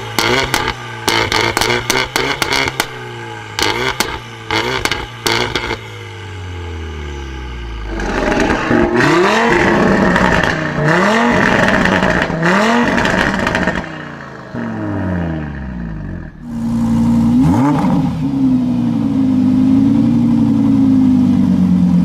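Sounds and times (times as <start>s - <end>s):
car engine accelerating: 0.0s - 22.0s
car exhaust pops and cracks: 0.1s - 3.0s, 3.6s - 5.8s, 11.4s - 13.9s.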